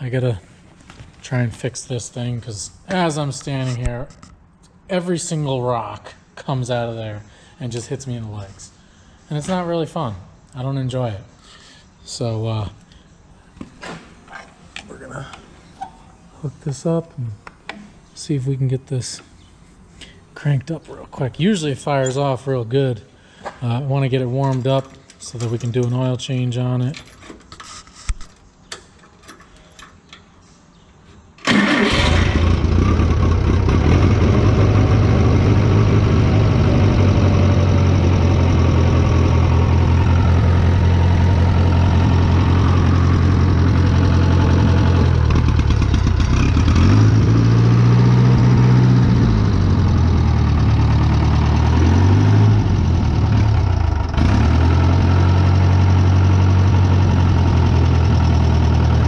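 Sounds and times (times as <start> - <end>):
engine starting and running: 31.4 - 59.0.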